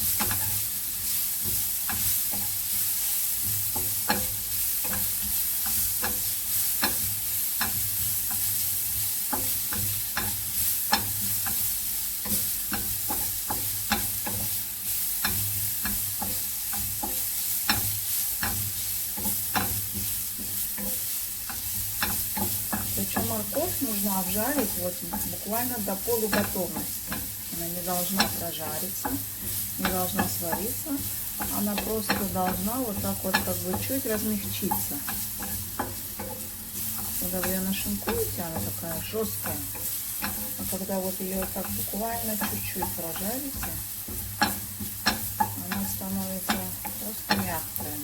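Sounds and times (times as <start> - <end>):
food sizzling in a frying pan: 0.0 - 48.0
utensil scraping a pan: 0.0 - 48.0.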